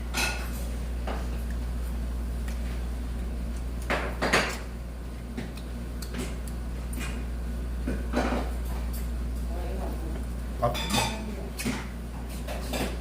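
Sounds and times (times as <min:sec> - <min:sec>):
steady low hum: 0:00.0 - 0:13.0
dishes clattering: 0:07.9 - 0:09.0, 0:10.7 - 0:11.9.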